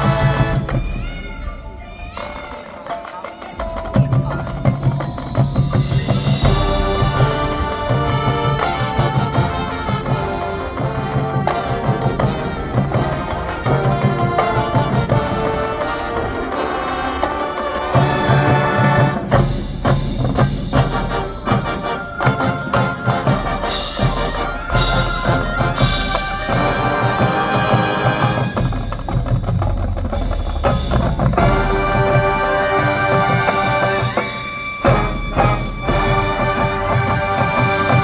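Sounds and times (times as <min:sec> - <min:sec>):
marching band playing: 0:00.0 - 0:38.0
sharp percussion hits: 0:00.0 - 0:38.0.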